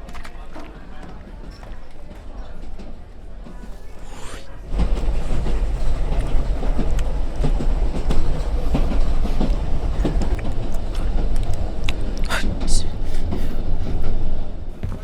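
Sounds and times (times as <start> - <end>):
low train rumble: 0.0 - 15.0
wheels clattering over rail joints: 4.8 - 14.2.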